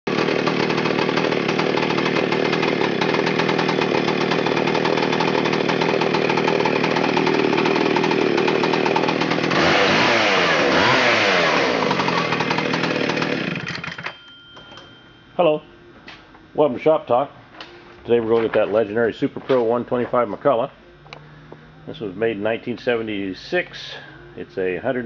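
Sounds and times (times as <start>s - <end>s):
chainsaw engine revving: 0.1s - 14.1s.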